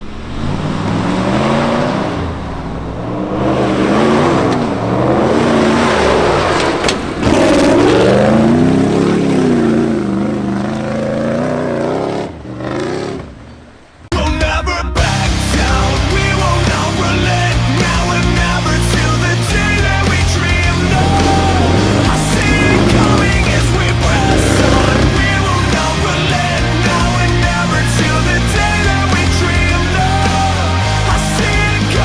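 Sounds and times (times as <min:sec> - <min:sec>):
car engine revving: 0:00.0 - 0:14.1, 0:15.3 - 0:32.0
loud rock music: 0:14.2 - 0:32.0.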